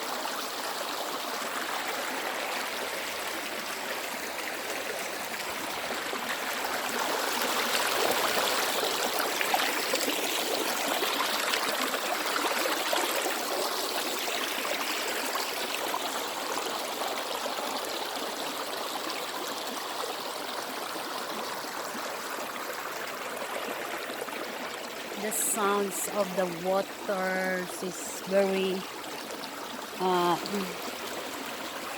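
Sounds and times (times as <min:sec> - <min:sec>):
river water rushing: 0:00.0 - 0:16.8, 0:21.7 - 0:31.9.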